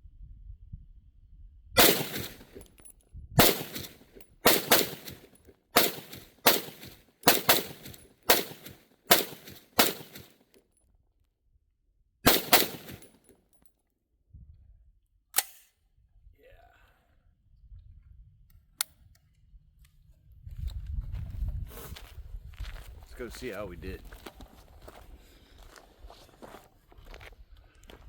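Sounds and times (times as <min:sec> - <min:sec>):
rifle shots: 0:01.8 - 0:02.7, 0:03.4 - 0:10.3, 0:12.3 - 0:13.2.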